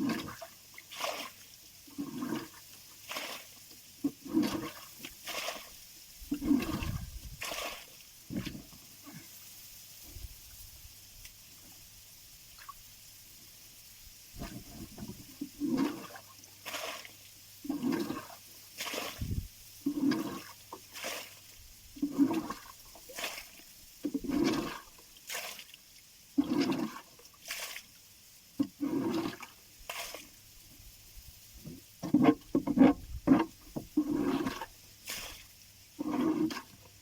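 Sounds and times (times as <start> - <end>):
rhythmic splashing in water: 0.0 - 8.7, 14.4 - 27.9.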